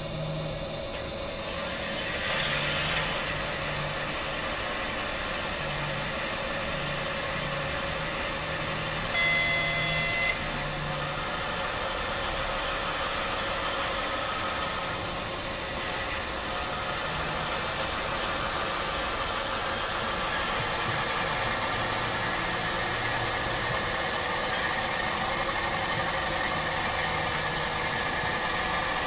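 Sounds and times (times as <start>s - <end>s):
loud horn blast: 9.1s - 10.7s
diesel engine running: 10.3s - 12.4s, 13.2s - 29.0s.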